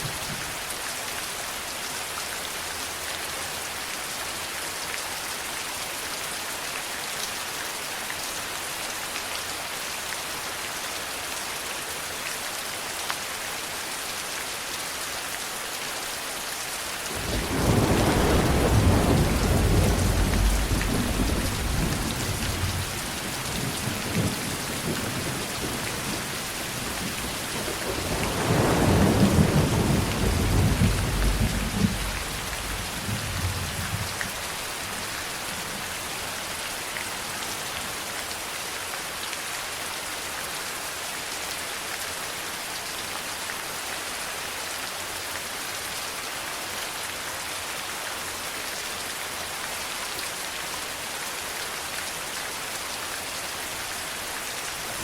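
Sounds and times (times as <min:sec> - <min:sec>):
steady rain hissing: 0:00.0 - 0:55.0
thunder rumbling: 0:17.1 - 0:25.8, 0:26.9 - 0:34.2.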